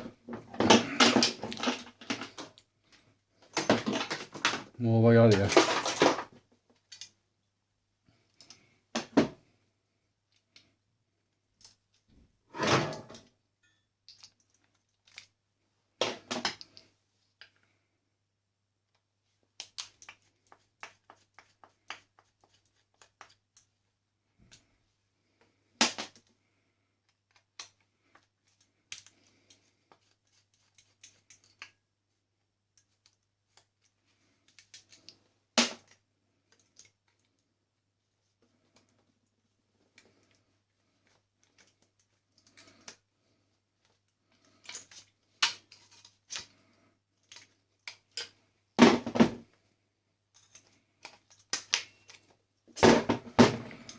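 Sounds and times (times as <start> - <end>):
plastic and metal parts rattling: 0.3 - 2.6, 3.4 - 4.7, 5.3 - 7.1.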